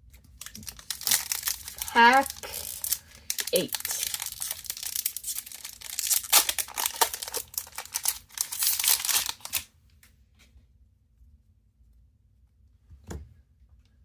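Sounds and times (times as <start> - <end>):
foil wrapper tearing and crinkling: 0.3 - 9.7.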